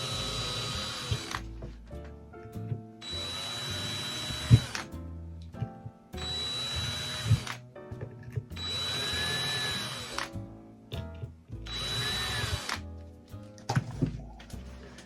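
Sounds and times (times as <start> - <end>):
power drill boring holes: 0.0 - 1.5, 3.0 - 4.9, 6.2 - 7.6, 8.6 - 10.3, 11.7 - 12.8.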